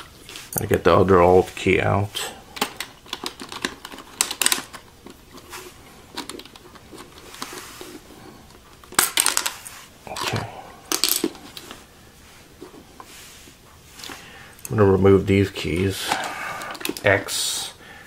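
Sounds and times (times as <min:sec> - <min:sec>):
plastic keycaps clicking: 0:02.6 - 0:05.2.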